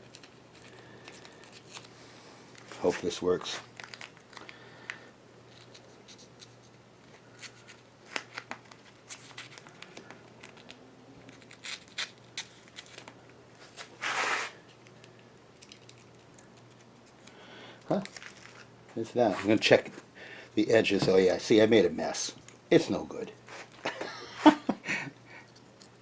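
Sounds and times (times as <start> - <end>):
tape crinkling: 0.0 - 19.9
masking tape pulled and torn: 7.3 - 13.1.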